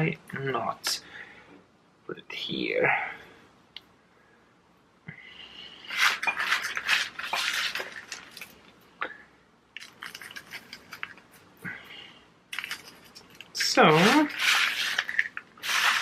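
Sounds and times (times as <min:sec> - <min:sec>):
soil and pots scraping: 0:05.8 - 0:08.6, 0:12.6 - 0:16.0.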